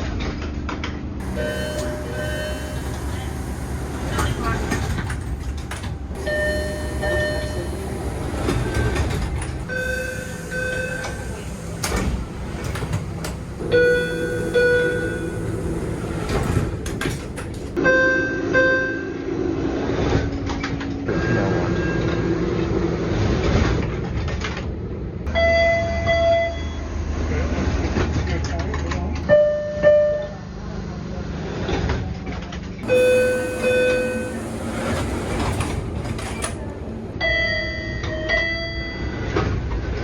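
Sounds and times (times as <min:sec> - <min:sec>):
train rumble: 0:00.8 - 0:17.9, 0:30.6 - 0:37.5
subway door chimes: 0:01.2 - 0:19.3, 0:25.3 - 0:27.0, 0:29.3 - 0:30.4, 0:32.8 - 0:39.3.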